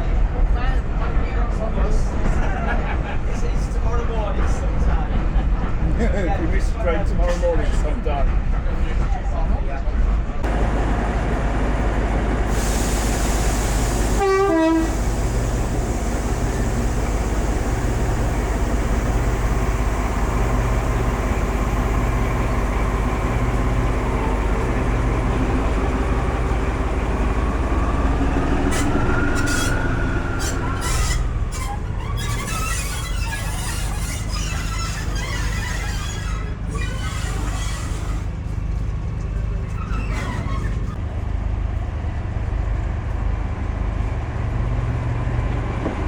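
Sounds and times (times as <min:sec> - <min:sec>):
diesel locomotive engine idling: 0:10.4 - 0:46.0.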